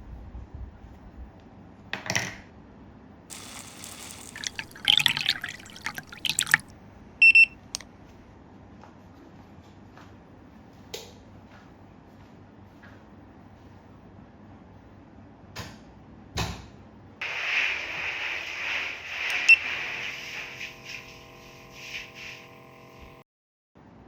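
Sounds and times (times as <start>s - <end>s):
water splashing and dripping: 3.3s - 6.7s.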